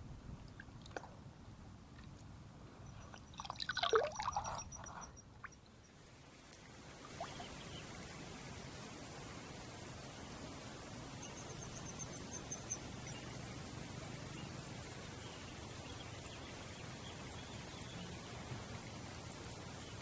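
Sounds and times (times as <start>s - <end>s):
faint outdoor hiss: 0.0s - 20.0s
short high chirps: 2.9s - 5.3s.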